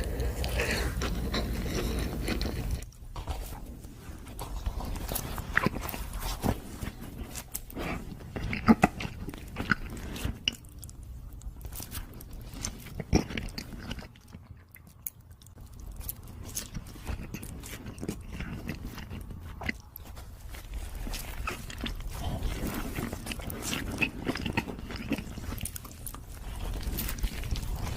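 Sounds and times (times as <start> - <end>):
wet sticky chewing: 0.0 - 27.9.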